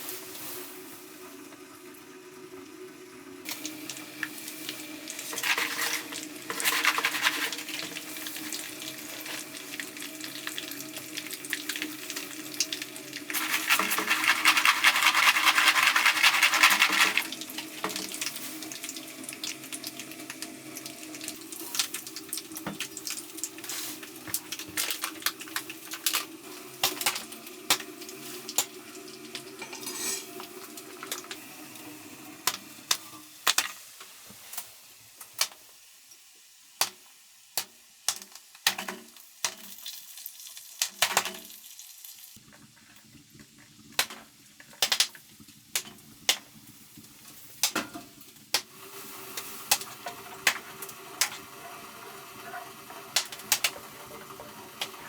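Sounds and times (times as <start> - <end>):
pots and utensils clinking: 5.2 - 10.4, 12.2 - 18.4, 23.6 - 31.4.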